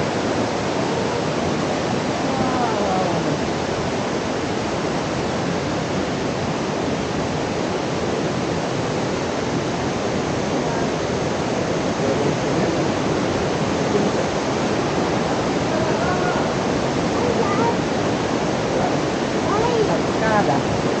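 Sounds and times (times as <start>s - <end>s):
fast-flowing water rushing: 0.0s - 21.0s.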